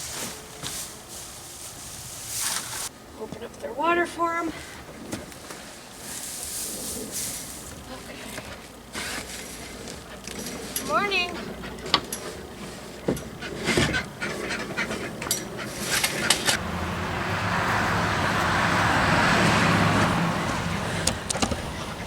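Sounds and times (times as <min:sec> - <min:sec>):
vehicle passing by: 0:09.5 - 0:22.0
sharp clicks and knocks: 0:21.0 - 0:21.7.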